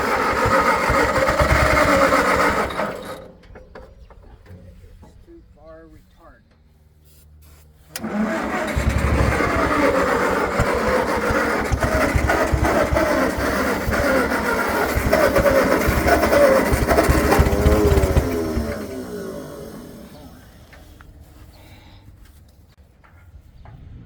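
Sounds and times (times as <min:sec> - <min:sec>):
tractor engine cranking and running rough: 0:00.0 - 0:05.0, 0:07.9 - 0:21.5.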